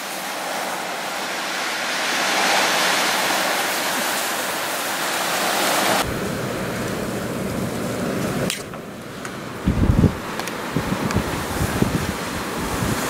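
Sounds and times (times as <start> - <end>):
wind hissing in snowstorm: 0.0 - 13.0
wind buffeting microphone: 9.5 - 13.0.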